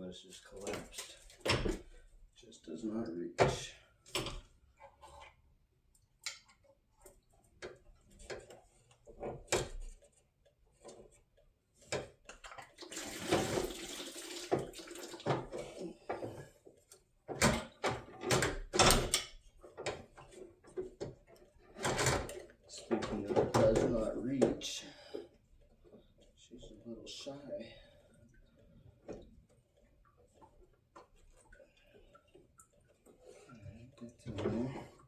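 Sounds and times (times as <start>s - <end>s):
clicks and knocks of parts: 17.3s - 23.9s.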